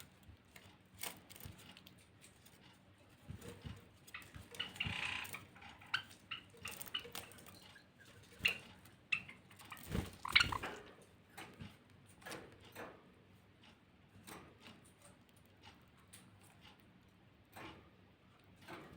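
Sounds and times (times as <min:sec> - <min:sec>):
finches chirping: 0:04.1 - 0:10.8.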